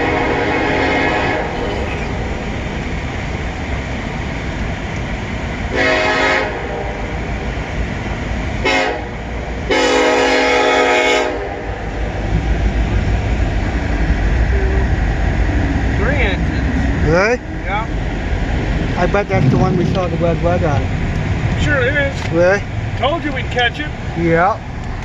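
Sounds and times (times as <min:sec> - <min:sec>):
locomotive horn blasts: 0:00.0 - 0:02.2, 0:05.7 - 0:07.3, 0:08.6 - 0:11.9
train rumble: 0:00.0 - 0:25.0.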